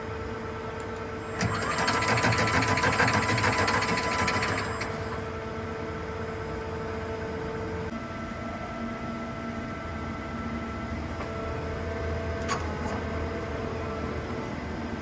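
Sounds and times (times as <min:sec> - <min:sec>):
machine humming and whining: 0:00.0 - 0:15.0
rhythmic mechanical clatter: 0:01.2 - 0:05.3.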